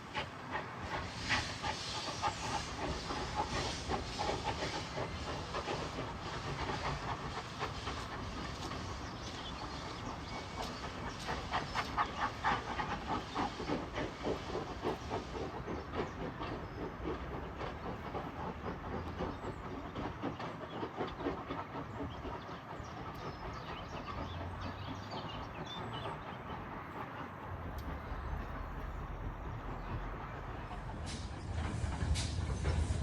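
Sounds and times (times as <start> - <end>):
steam hiss: 0.0 - 27.4, 29.5 - 33.0
steam train chuffing: 0.0 - 33.0
train rumble: 0.0 - 33.0.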